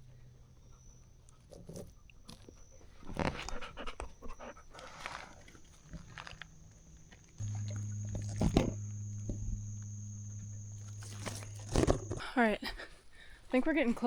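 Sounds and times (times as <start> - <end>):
dog panting: 3.4 - 5.4.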